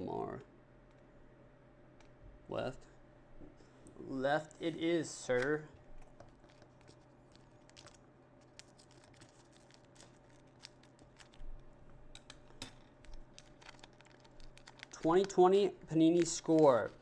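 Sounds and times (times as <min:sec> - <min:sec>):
plastic wrapper crinkling: 0:05.8 - 0:17.0.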